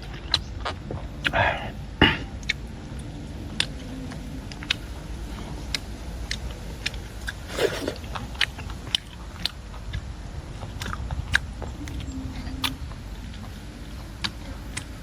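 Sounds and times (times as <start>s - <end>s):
person chewing and crunching: 0.0s - 15.0s.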